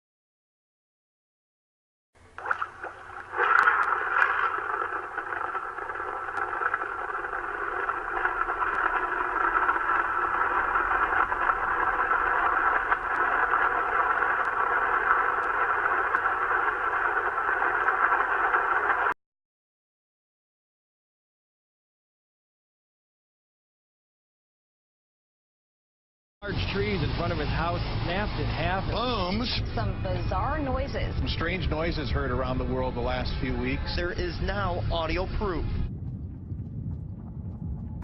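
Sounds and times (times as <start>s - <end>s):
distorted droning tones: 2.2s - 19.2s, 26.4s - 38.0s.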